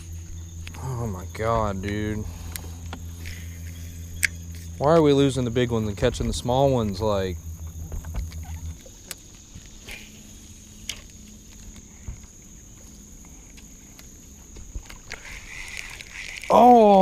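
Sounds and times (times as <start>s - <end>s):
insect drone: 0.0s - 17.0s
low hum: 0.0s - 17.0s
sharp clicks and knocks: 6.0s - 9.7s.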